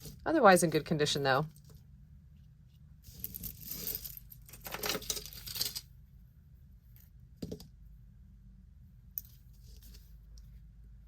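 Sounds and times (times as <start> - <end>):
metal jewelry clinking: 3.1 - 5.9.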